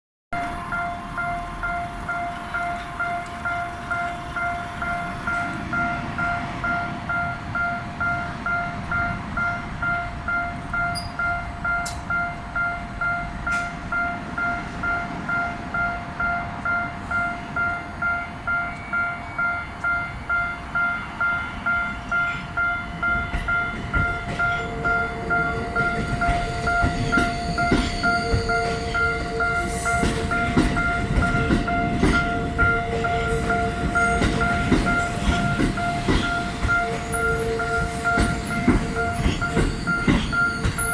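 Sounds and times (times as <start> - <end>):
level-crossing bell ringing: 0.4 - 40.9
train wheels rumbling over rail joints: 21.9 - 40.9.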